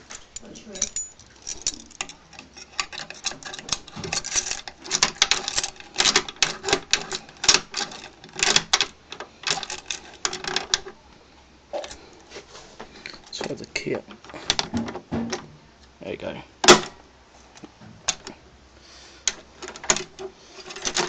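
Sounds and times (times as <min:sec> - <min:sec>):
keys jangling on a ring: 0:00.3 - 0:04.7
key rattling in a lock: 0:00.3 - 0:10.9, 0:19.6 - 0:21.0.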